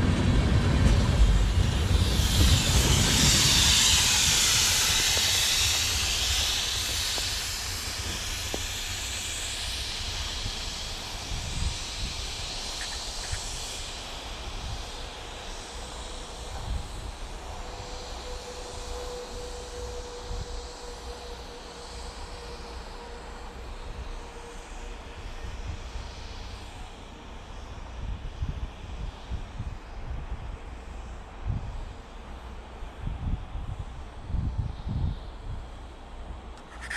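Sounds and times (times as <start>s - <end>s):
steady hum: 0.0s - 17.9s
air hissing from train: 0.0s - 36.9s
low train rumble: 0.0s - 36.9s.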